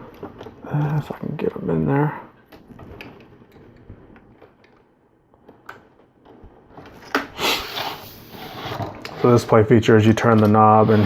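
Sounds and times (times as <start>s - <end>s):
plastic bricks clicking: 2.5s - 7.3s.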